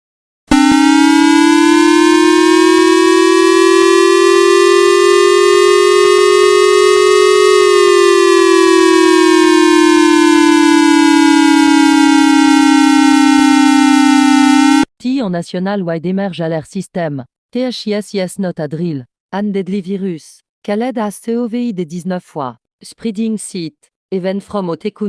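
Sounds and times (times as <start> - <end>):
electronic siren wail: 0.5 - 14.9.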